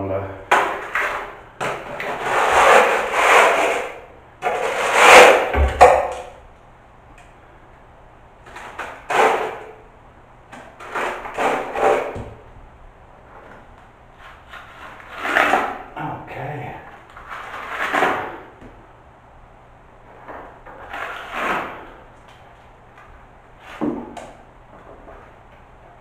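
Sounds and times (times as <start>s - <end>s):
plastering trowel scraping mortar: 0.5s - 5.7s, 8.5s - 9.7s, 10.8s - 12.3s, 14.2s - 15.9s, 17.2s - 18.5s, 20.1s - 22.0s.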